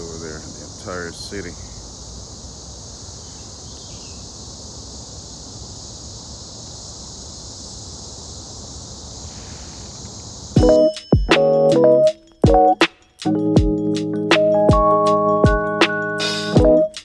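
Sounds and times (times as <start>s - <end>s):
insects droning: 0.0s - 17.0s
piano music: 10.6s - 17.0s.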